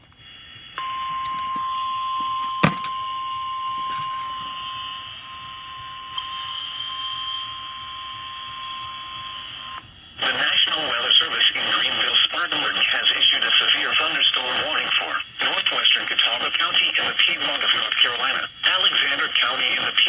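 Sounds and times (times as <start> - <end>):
radio static hiss: 10.2 - 20.0.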